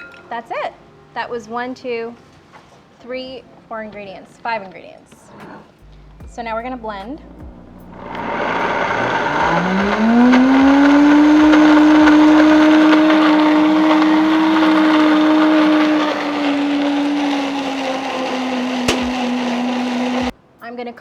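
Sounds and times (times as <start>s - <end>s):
blender motor running: 7.5s - 20.3s.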